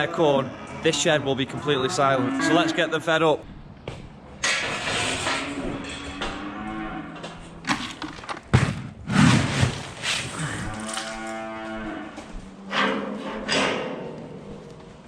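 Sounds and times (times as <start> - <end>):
cows mooing loudly: 0.0 - 3.1, 5.2 - 7.6, 10.3 - 13.2.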